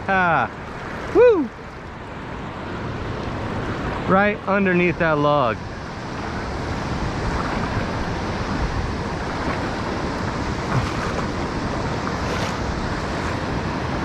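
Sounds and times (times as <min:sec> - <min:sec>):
river rushing over rocks: 0:07.0 - 0:14.0.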